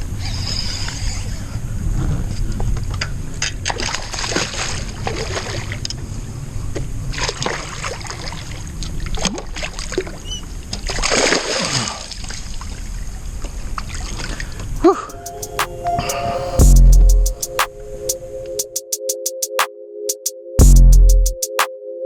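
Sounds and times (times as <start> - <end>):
steady low rumble: 15.2 - 17.5, 20.6 - 21.4.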